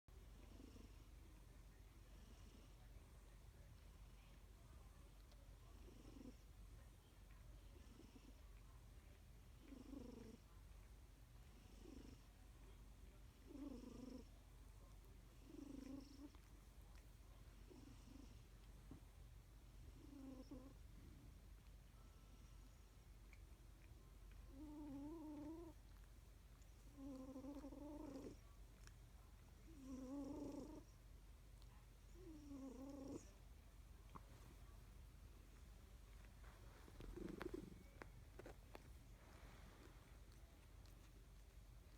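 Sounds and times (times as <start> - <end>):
cat snoring purr: 0.3 - 1.1, 5.7 - 6.5, 7.8 - 8.4, 9.6 - 10.5, 11.5 - 12.3, 13.4 - 14.4, 15.4 - 16.4, 17.6 - 18.5, 19.9 - 21.1, 24.5 - 25.8, 26.9 - 28.6, 29.7 - 31.0, 32.2 - 33.3, 36.8 - 40.1.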